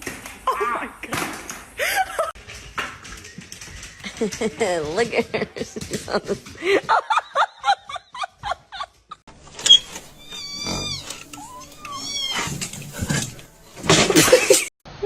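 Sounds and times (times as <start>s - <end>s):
cat meowing: 10.2s - 12.7s.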